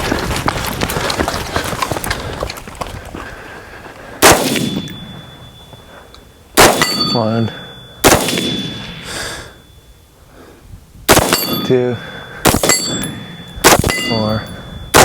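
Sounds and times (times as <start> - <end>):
clattering and movement noise: 0.0 - 6.4
gunshots: 4.2 - 5.2, 6.6 - 7.2, 8.0 - 9.1, 11.1 - 11.8, 12.4 - 15.0
steel target ringing: 4.3 - 10.0, 11.1 - 15.0.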